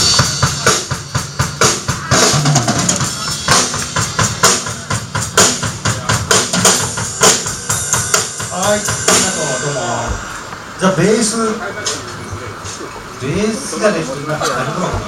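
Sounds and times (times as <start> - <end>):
music with driving drum kit: 0.0 - 10.7.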